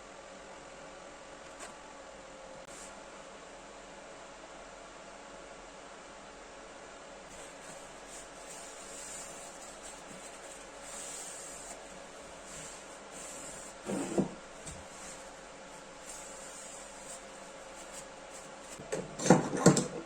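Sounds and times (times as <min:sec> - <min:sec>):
steady hiss: 0:07.3 - 0:18.8.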